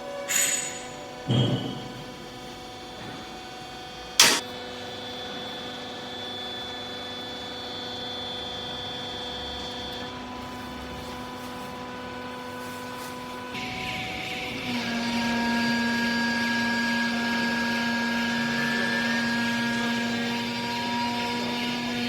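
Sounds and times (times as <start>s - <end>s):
sharp metal clank: 4.2s - 4.4s.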